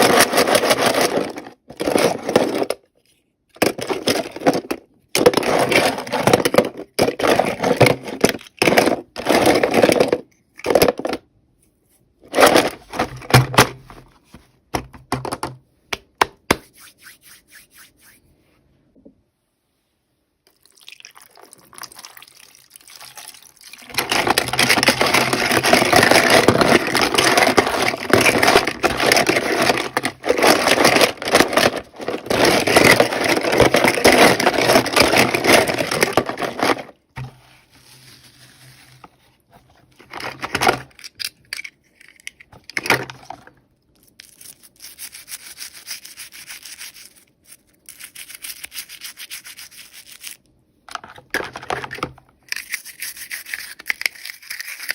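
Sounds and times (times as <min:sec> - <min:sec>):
hands rubbing packaging: 0:16.5 - 0:18.4, 0:23.8 - 0:40.1, 0:44.2 - 0:50.4
packaging scrapes: 0:23.8 - 0:39.5.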